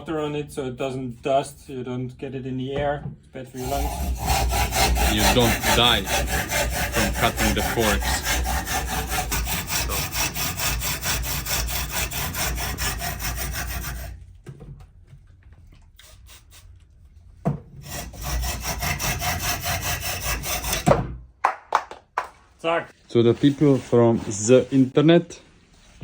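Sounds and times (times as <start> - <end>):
hand saw cutting metal tube: 3.6 - 14.2, 17.8 - 21.0.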